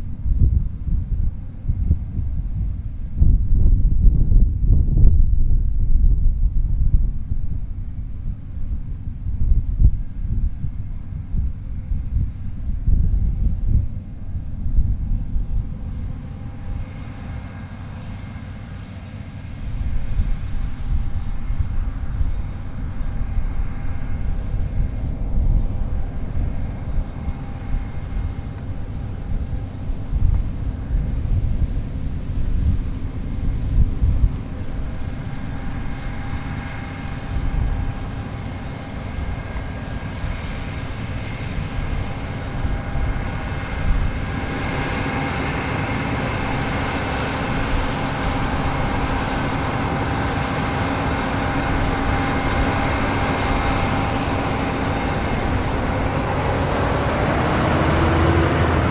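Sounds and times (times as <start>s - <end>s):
combine harvester droning: 6.6s - 58.9s
machinery whining: 15.7s - 58.9s.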